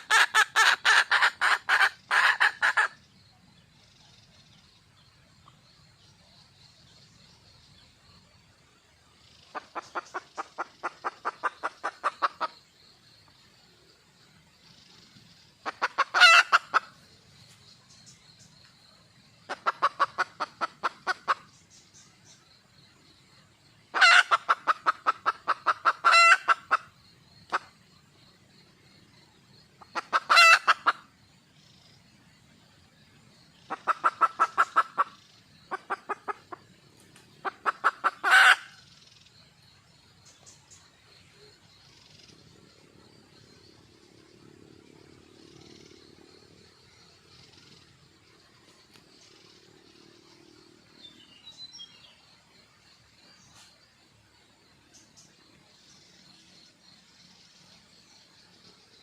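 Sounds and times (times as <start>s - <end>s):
hen clucking: 0.0s - 3.0s, 15.6s - 17.0s, 19.5s - 21.4s, 24.0s - 26.9s, 29.9s - 31.0s, 33.7s - 36.6s, 37.4s - 38.8s.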